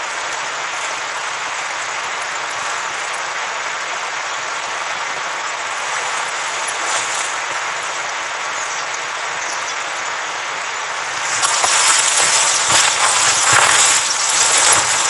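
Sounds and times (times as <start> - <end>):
rushing wind: 0.0 - 15.0.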